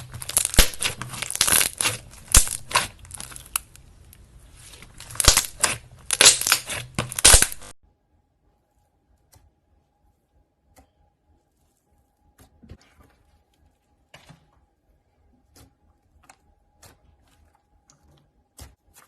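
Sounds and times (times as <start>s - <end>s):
slime crackling and popping: 0.0s - 4.2s, 4.8s - 7.8s.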